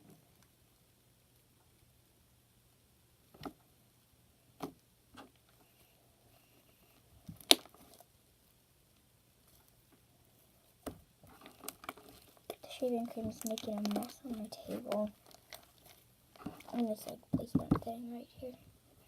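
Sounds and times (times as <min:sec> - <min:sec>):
slime squelching: 0:11.2 - 0:18.2.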